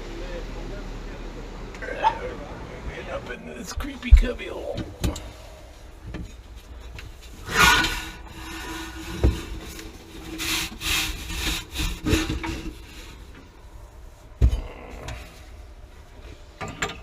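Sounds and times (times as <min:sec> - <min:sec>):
scraping and rubbing on wood: 0:06.1 - 0:13.5.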